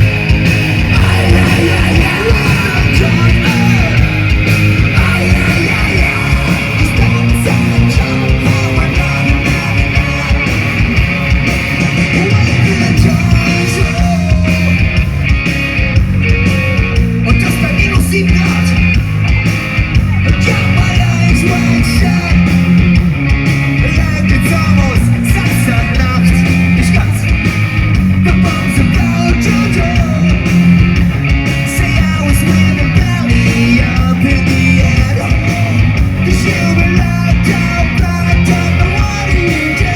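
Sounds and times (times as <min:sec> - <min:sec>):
bass guitar: 0:00.0 - 0:39.9
distorted electric guitars: 0:00.0 - 0:39.9
driving drum beat: 0:00.0 - 0:39.9
person singing: 0:00.8 - 0:11.1, 0:12.0 - 0:14.8.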